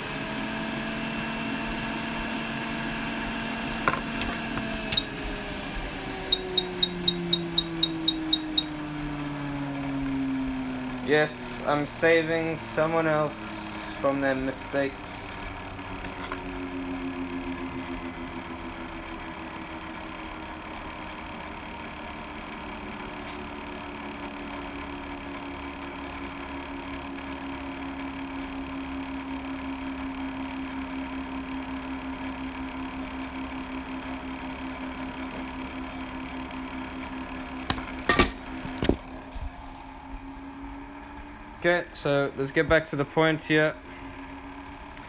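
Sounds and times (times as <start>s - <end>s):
hot air rework station whirring: 0.0s - 19.7s, 35.0s - 42.2s
sharp clicks: 4.0s - 5.4s, 6.2s - 8.9s.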